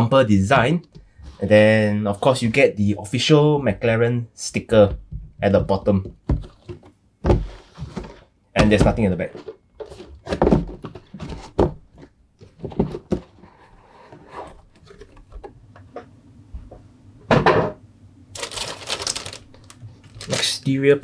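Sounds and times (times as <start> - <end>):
plastic bag crinkling: 18.3 - 21.0.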